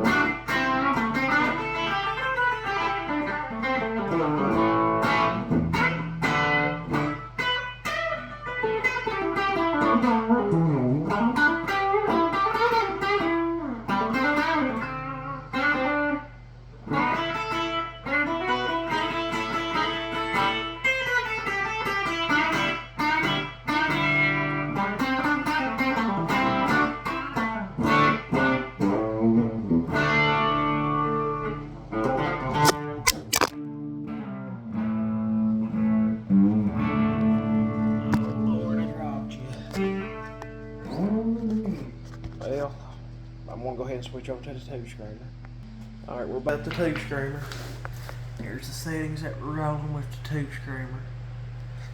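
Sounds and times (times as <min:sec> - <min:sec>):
overdriven electric guitar: 0:00.0 - 0:43.5
steady low hum: 0:27.6 - 0:51.9.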